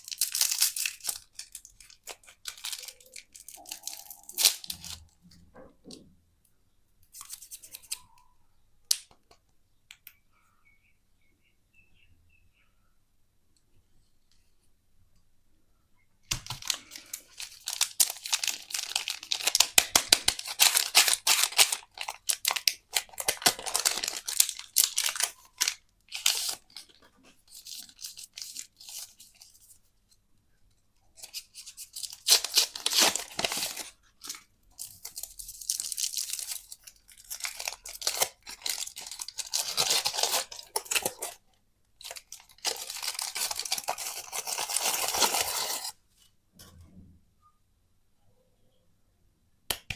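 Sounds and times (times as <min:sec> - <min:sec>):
candy wrappers crinkling: 0:00.0 - 0:05.2, 0:16.3 - 0:29.7, 0:31.2 - 0:46.0.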